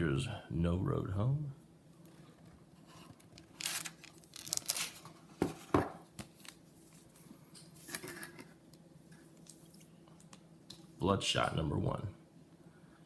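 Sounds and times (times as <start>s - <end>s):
crinkling plastic: 3.1s - 7.2s.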